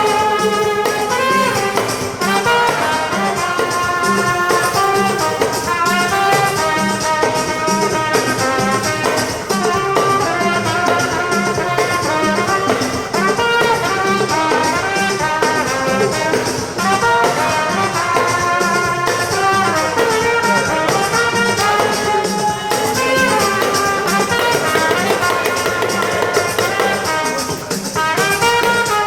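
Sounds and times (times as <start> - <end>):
brass melody over a steady beat: 0.0 - 29.0.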